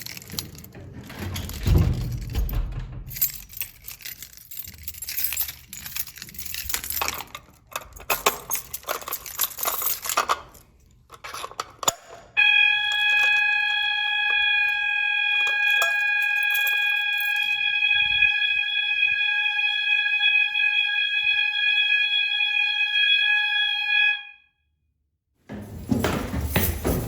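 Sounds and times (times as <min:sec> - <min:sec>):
clattering handling noise: 0:00.0 - 0:13.5, 0:15.4 - 0:17.4, 0:25.5 - 0:27.0
fire alarm horn buzzing: 0:11.2 - 0:24.8.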